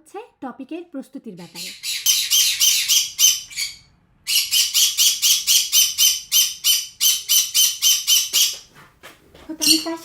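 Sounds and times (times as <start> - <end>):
parrot screeching: 1.4 - 8.6.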